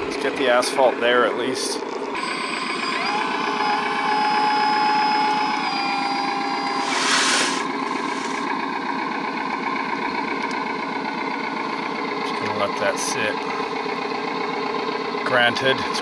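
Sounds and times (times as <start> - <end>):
steady engine sound: 0.0 - 4.0, 6.3 - 16.0
hydraulic pump whine: 1.9 - 8.5
loose material pouring: 6.7 - 8.5.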